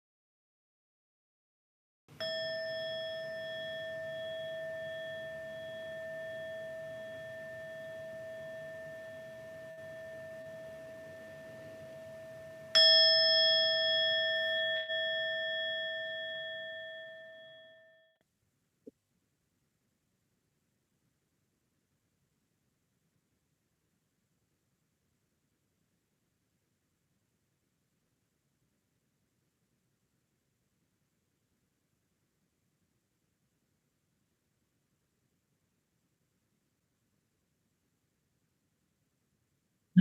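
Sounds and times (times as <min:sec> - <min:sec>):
meditation bell ringing: 0:02.2 - 0:18.2.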